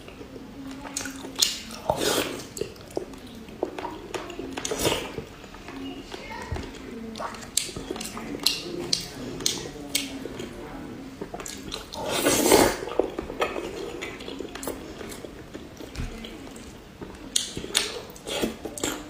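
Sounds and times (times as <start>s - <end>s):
chewing: 0.0s - 19.0s.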